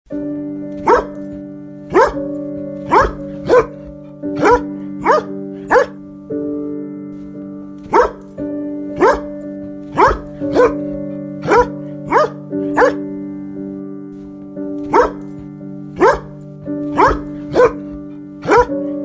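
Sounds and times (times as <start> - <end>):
background music sustained chords: 0.1 - 19.0
dog barking: 0.8 - 6.1, 7.2 - 19.0.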